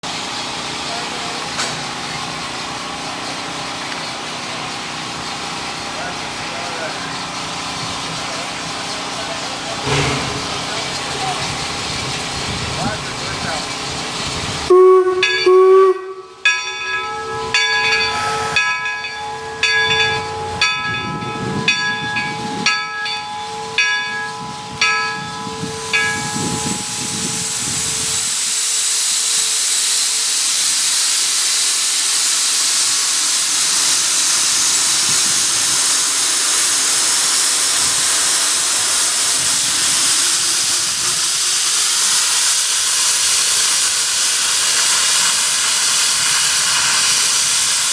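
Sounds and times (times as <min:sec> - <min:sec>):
steam venting hiss: 0:00.3 - 0:16.0, 0:25.2 - 0:47.9
sharp regular beats: 0:09.9 - 0:12.2
steam locomotive whistle: 0:14.7 - 0:18.6, 0:38.6 - 0:47.9.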